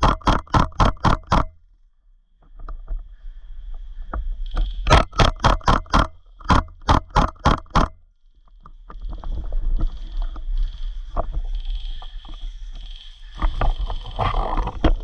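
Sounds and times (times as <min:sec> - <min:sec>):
airsoft gun firing: 0:00.0 - 0:01.6, 0:04.9 - 0:08.0.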